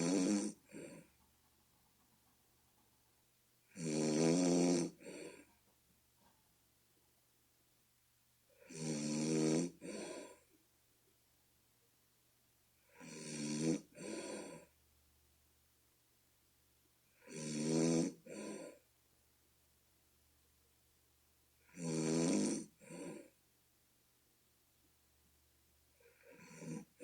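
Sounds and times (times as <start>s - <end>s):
person snoring: 0.0s - 1.1s, 3.7s - 5.5s, 8.6s - 10.4s, 12.9s - 14.7s, 17.2s - 18.8s, 21.7s - 23.3s, 26.0s - 27.0s.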